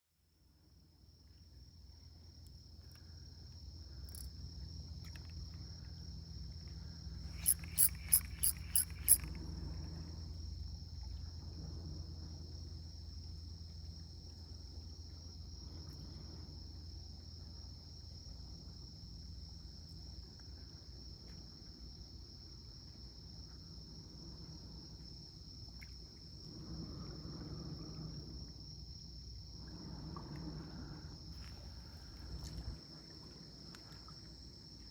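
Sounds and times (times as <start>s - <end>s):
insects chirring: 1.4s - 11.5s, 23.5s - 34.9s
wind on microphone: 29.6s - 32.9s.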